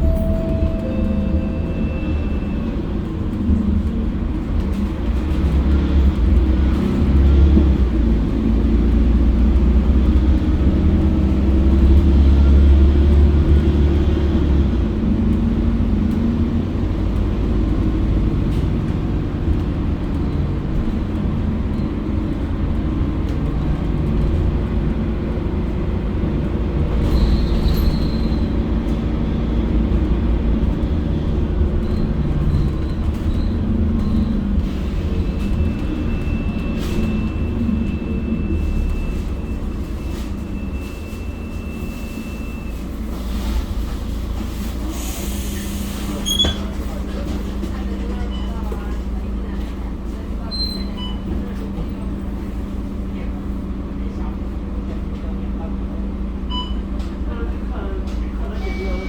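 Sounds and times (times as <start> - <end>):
brief high-pitched tone: 0.0 - 2.8
bus engine rumbling: 0.0 - 59.0.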